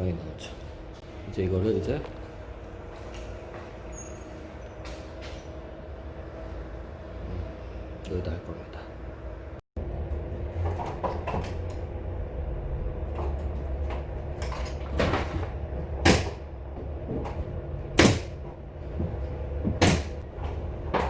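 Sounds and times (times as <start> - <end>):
steady low hum: 0.0 - 21.0
sharp loud impacts: 16.0 - 16.5, 18.0 - 18.4, 19.8 - 20.2.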